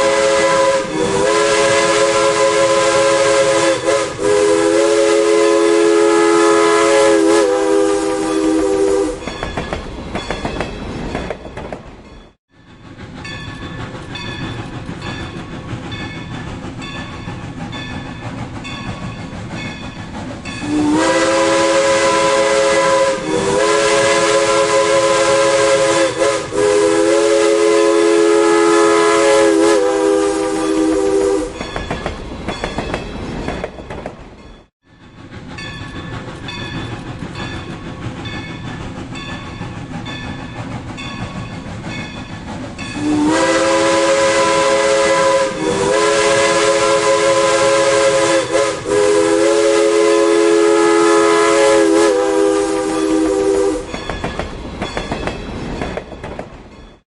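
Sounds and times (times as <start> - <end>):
steam locomotive chime whistle: 0.0 - 10.7, 12.2 - 33.7, 34.6 - 56.1
train wheels clicking over rail joints: 8.8 - 26.7, 30.1 - 49.9, 51.1 - 57.0.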